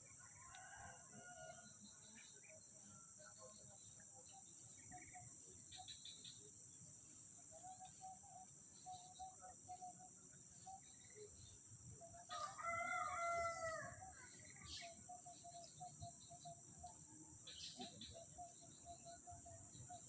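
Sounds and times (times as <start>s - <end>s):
rooster crowing: 12.3s - 14.0s.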